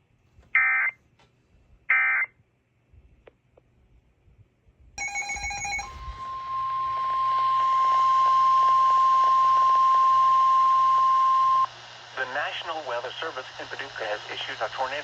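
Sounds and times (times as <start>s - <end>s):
loud steady alarm beep: 5.0s - 11.8s
high data tones: 5.0s - 12.6s
radio hiss: 6.3s - 15.0s.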